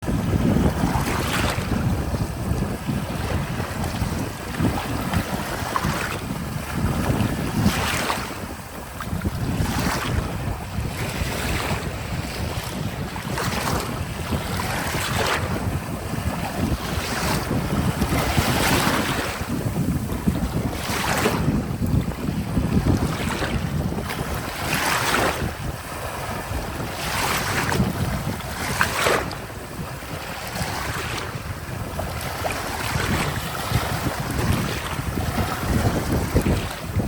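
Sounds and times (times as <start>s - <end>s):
wind rumble on microphone: 0.0s - 37.0s
small waves breaking on shore: 0.1s - 37.0s.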